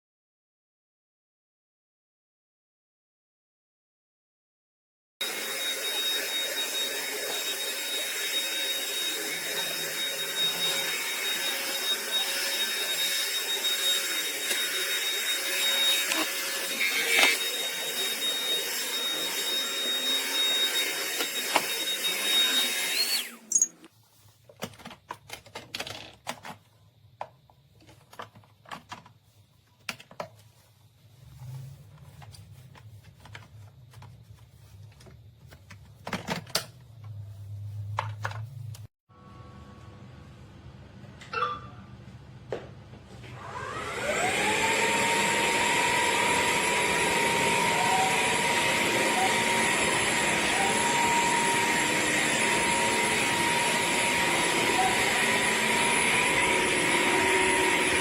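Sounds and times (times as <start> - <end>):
wet-dry vacuum running: 5.2 - 23.6, 43.3 - 58.0.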